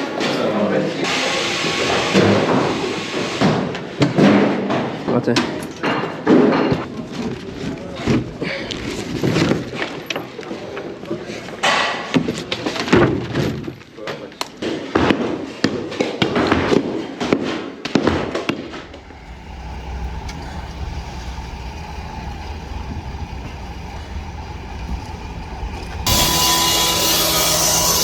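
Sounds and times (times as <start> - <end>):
low rumble: 18.6 - 27.8
loud even hiss: 18.7 - 28.0.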